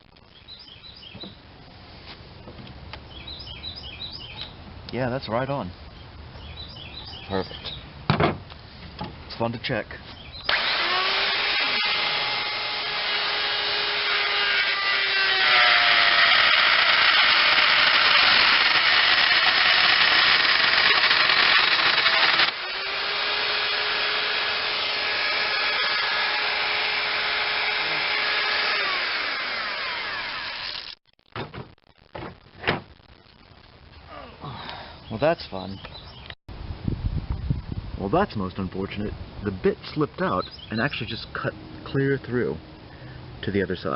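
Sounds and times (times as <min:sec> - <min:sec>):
router cutting wood chatter: 0:10.5 - 0:31.0
router motor whine: 0:10.5 - 0:31.0.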